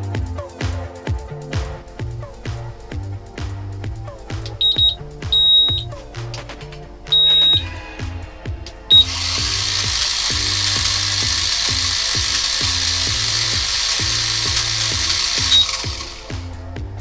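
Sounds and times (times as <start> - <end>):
background music with a beat: 0.0 - 17.0
drone propellers whirring: 1.1 - 17.0
short high electronic beeps: 4.4 - 5.9, 7.1 - 7.7, 8.9 - 12.6.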